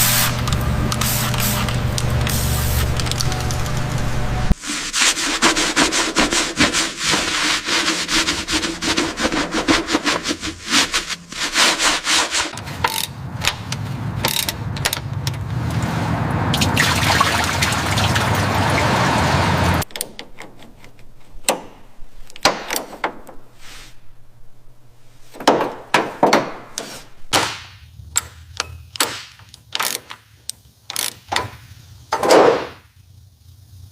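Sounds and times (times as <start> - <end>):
low hum: 0.0 - 4.6
hand sanding strokes: 4.6 - 12.6, 23.6 - 24.1, 26.5 - 27.3.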